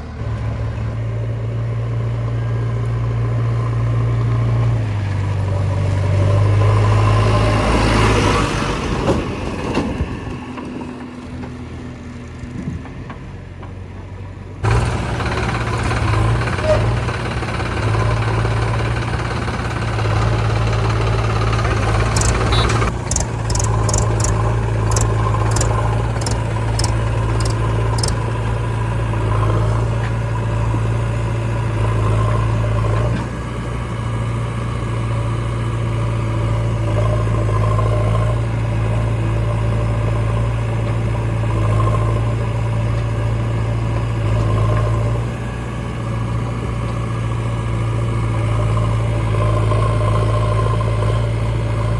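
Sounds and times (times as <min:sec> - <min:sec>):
diesel engines running: 0:00.0 - 0:51.9
sharp clicks: 0:21.6 - 0:28.2.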